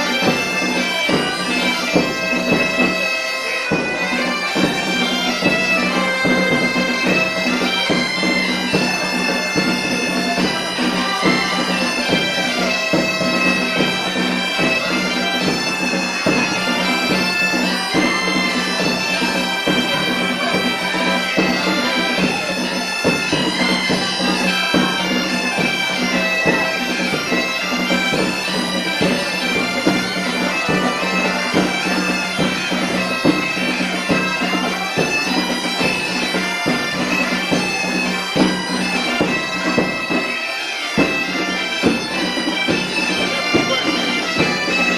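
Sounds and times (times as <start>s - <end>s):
bagpipe drone: 0.0s - 44.9s
bagpipes playing a tune: 0.0s - 44.9s
drum beats: 0.0s - 44.9s.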